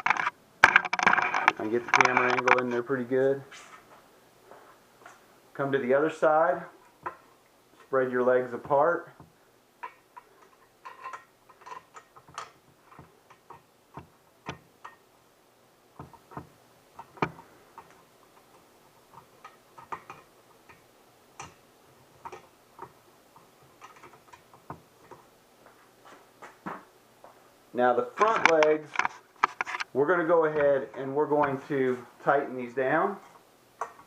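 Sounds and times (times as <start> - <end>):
metal parts clicking and tapping: 0.0 - 2.9, 8.5 - 15.1, 16.0 - 25.3, 28.2 - 29.9.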